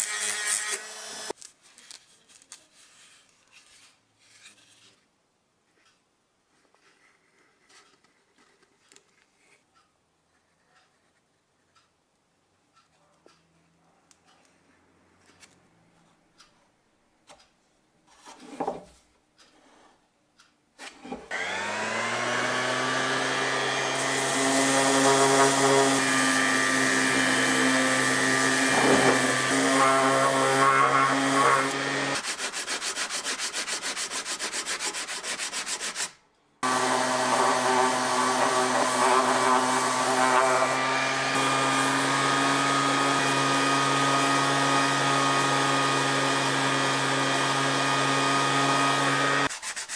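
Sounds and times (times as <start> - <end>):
power tool grinding: 21.3 - 33.4, 36.6 - 49.5.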